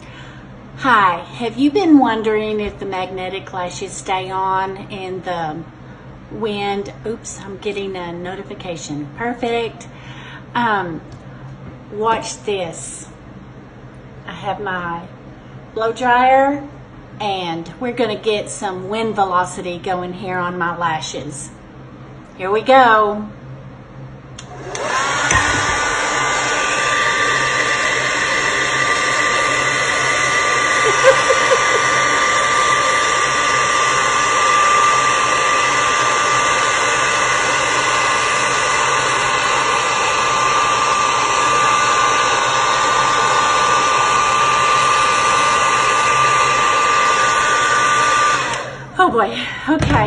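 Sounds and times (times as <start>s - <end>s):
blow dryer running: 24.4s - 49.2s.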